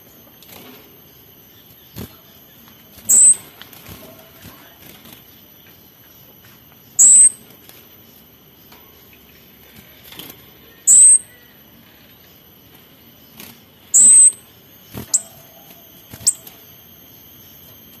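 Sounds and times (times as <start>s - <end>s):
faint high-pitched tones: 0.0s - 18.0s.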